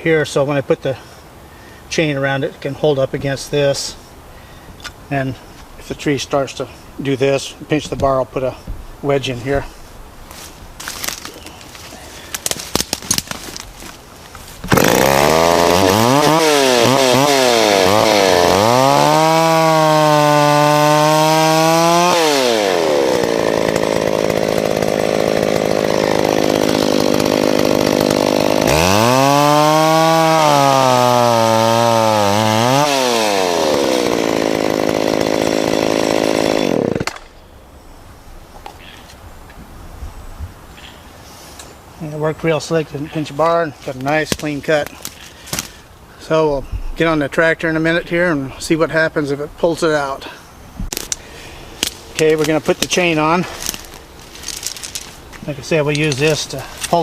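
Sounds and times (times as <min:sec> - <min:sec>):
chainsaw revving and cutting wood: 0:09.3 - 0:37.4, 0:42.4 - 0:45.9, 0:47.8 - 0:57.0.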